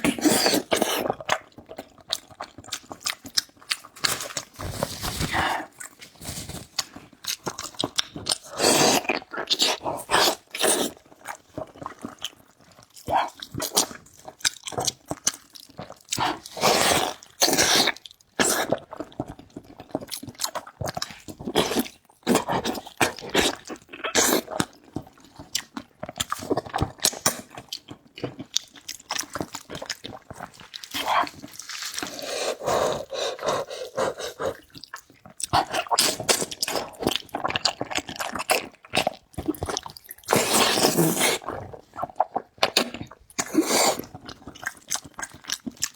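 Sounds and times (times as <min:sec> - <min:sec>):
slurping noodles and soup: 0:00.0 - 0:01.5, 0:03.8 - 0:12.2, 0:16.2 - 0:19.1, 0:29.2 - 0:44.8
wet chewing: 0:00.0 - 0:45.9.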